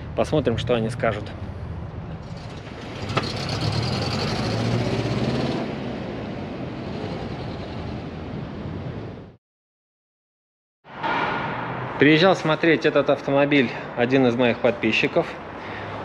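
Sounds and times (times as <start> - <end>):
road noise: 0.0 - 9.4, 10.8 - 16.0
vehicle engine hum: 1.2 - 9.4.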